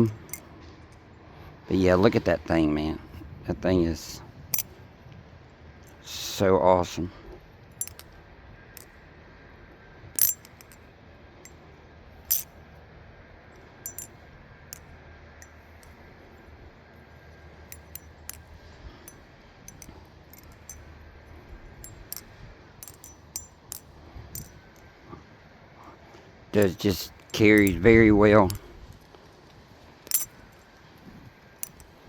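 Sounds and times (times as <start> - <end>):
butterfly knife metallic clicks: 10.2 - 10.8, 13.9 - 14.1, 22.8 - 23.8.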